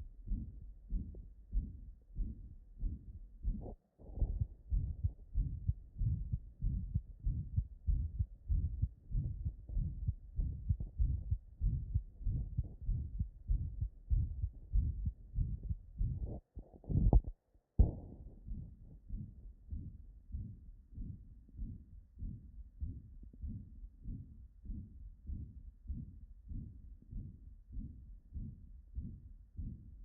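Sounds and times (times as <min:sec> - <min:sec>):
heartbeat through stethoscope: 0:00.0 - 0:30.0
whooshing heart murmur: 0:00.3 - 0:19.2.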